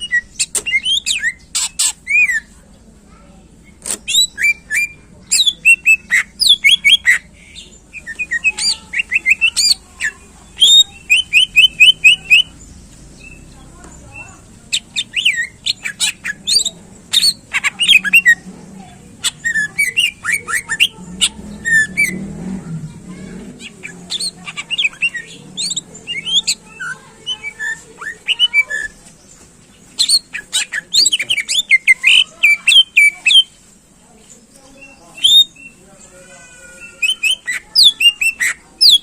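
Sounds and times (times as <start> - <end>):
bird singing whistled notes: 4.1 - 7.2, 10.6 - 12.6, 34.7 - 35.8.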